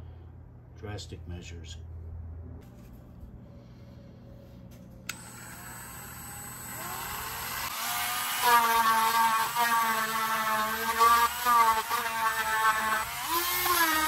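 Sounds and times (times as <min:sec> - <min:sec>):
power tool motor whine: 0:05.1 - 0:14.0.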